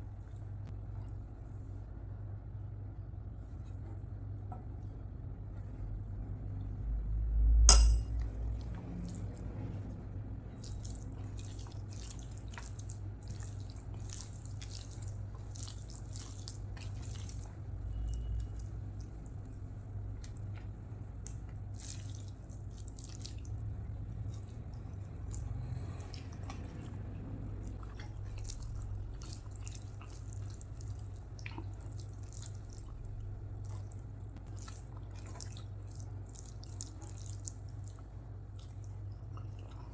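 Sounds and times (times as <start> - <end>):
steady low hum: 0.0 - 39.9
wet chewing mouth noises: 10.5 - 39.9.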